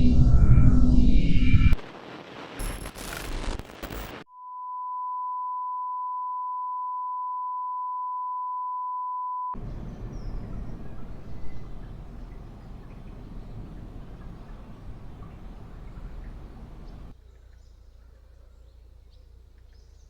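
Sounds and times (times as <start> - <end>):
crackly noise with clicks: 1.8 - 4.3
low background noise: 9.6 - 20.0.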